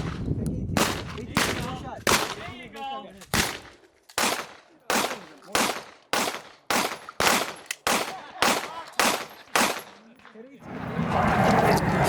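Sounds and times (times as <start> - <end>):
shotgun blasts with echo: 0.0 - 2.6, 3.3 - 10.1.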